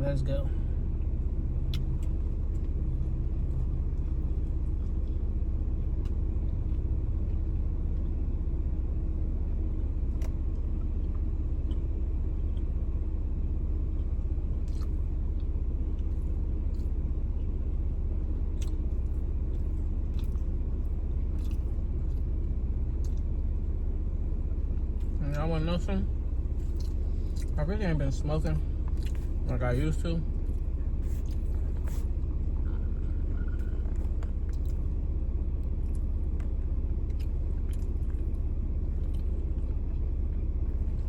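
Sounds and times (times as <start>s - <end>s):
steady low rumble: 0.0s - 41.0s
person chewing food: 13.8s - 17.5s, 18.4s - 22.4s, 23.0s - 23.4s, 26.5s - 27.6s, 28.7s - 29.5s, 30.4s - 41.0s.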